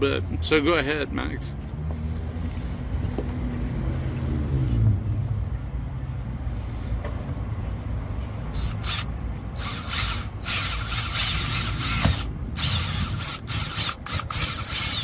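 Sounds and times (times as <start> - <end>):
power drill boring into wood: 8.6 - 15.0.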